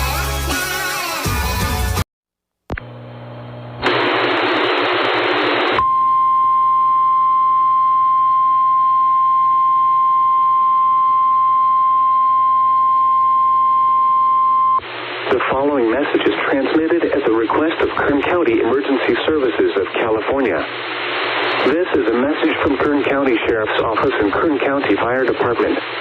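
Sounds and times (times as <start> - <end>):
harsh static noise: 2.7 - 5.8, 14.8 - 26.0.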